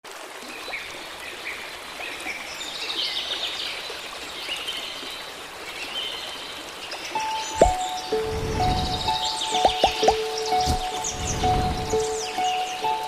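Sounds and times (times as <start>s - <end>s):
flowing water rushing: 0.0s - 13.0s
small birds chirping: 4.5s - 13.0s.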